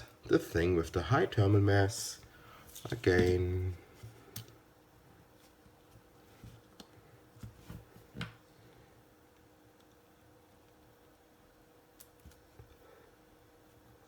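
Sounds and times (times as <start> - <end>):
faint steady hum: 0.0 - 14.0
faint clicks and taps: 5.6 - 8.4, 9.3 - 11.0.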